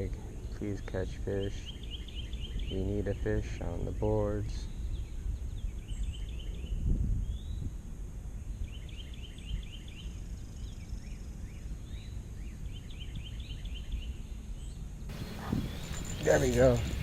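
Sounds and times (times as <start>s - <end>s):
songbird chirping: 0.7s - 7.7s, 8.5s - 17.0s
steady low rumble: 15.1s - 17.0s.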